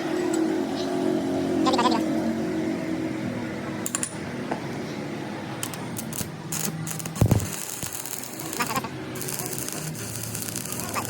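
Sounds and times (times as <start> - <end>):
metallic clinks and taps: 3.8 - 4.6.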